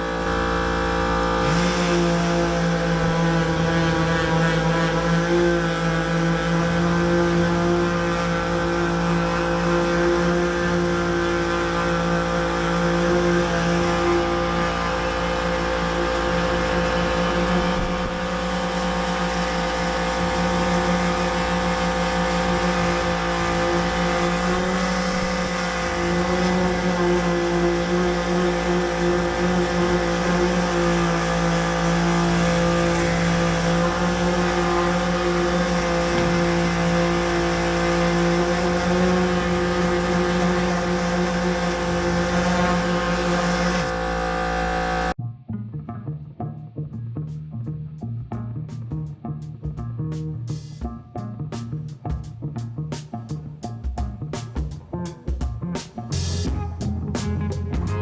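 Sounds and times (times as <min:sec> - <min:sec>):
power sander running: 0:00.0 - 0:45.2.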